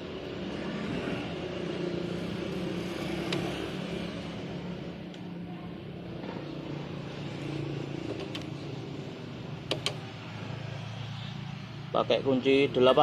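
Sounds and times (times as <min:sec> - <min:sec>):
vehicle engine humming: 0:00.0 - 0:13.0
sharp clicks: 0:09.7 - 0:10.1.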